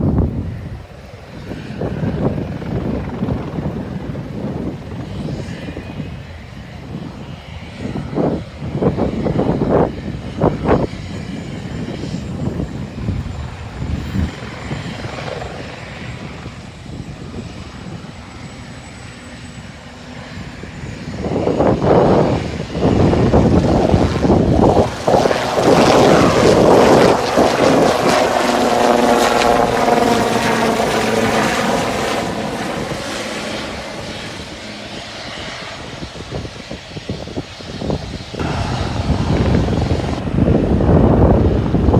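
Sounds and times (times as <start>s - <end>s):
aircraft engine and propeller: 0.0s - 41.9s
gusty low rumble: 20.7s - 41.9s.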